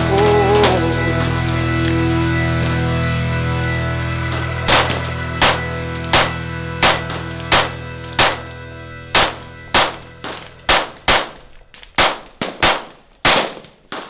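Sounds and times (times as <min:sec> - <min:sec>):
background music: 0:00.0 - 0:13.4
gunshots: 0:04.3 - 0:14.0.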